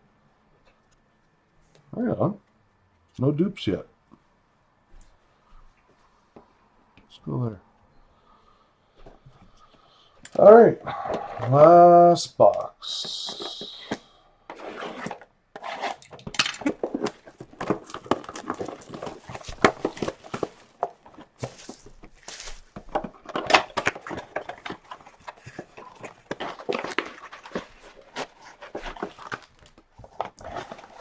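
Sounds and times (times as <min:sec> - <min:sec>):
cardboard and wrappers rustling: 0:14.6 - 0:31.0
wrapper tearing: 0:16.6 - 0:22.8.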